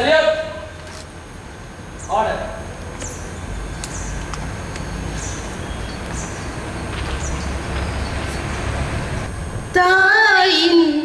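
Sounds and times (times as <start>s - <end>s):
steady low rumble: 0.0s - 11.0s
bird chirping: 1.1s - 9.8s.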